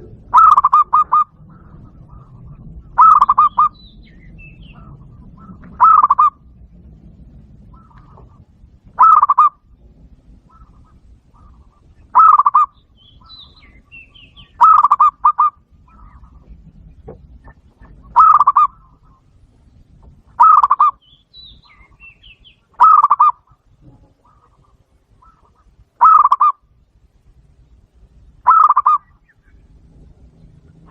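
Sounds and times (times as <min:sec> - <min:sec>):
dove cooing: 0:00.0 - 0:06.6, 0:07.6 - 0:19.3, 0:20.3 - 0:21.0, 0:22.8 - 0:26.6, 0:28.4 - 0:29.7
small birds chirping: 0:00.0 - 0:30.9.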